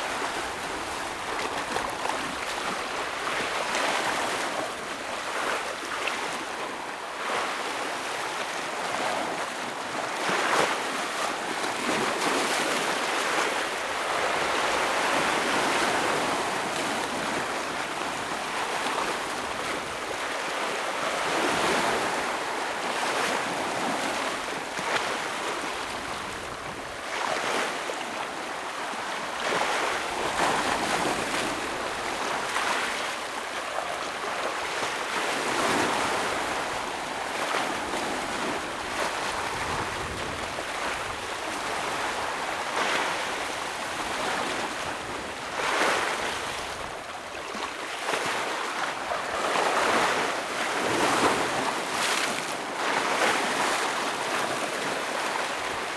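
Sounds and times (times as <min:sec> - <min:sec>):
ocean waves breaking on rocks: 0:00.0 - 0:55.9.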